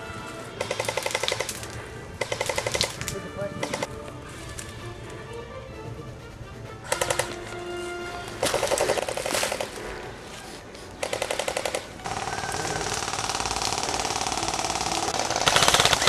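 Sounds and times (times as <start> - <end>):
airsoft gun full-auto fire: 0.6 - 3.0, 6.9 - 7.4, 8.4 - 9.8, 11.0 - 16.0.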